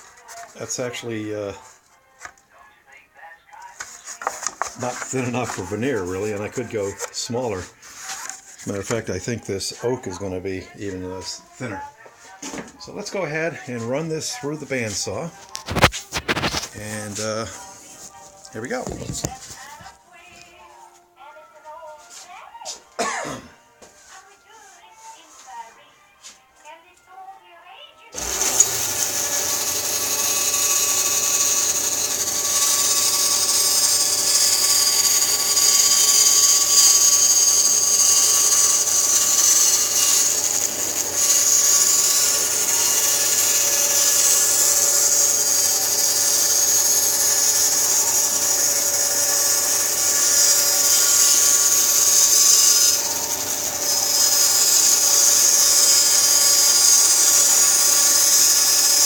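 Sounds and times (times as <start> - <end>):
bandsaw blade cutting wood: 15.6 - 17.3, 28.2 - 59.0.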